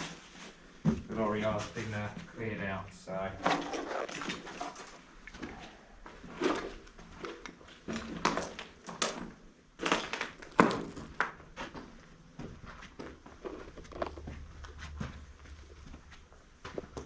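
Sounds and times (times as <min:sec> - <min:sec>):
footsteps crunching over rubble: 0:03.4 - 0:17.0.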